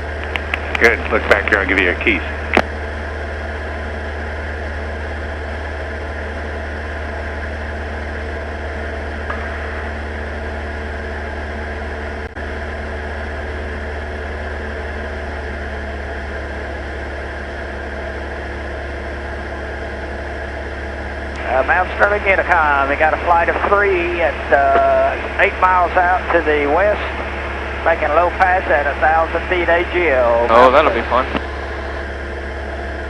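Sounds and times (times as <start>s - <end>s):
airplane engine and propeller drone: 0.0s - 33.0s.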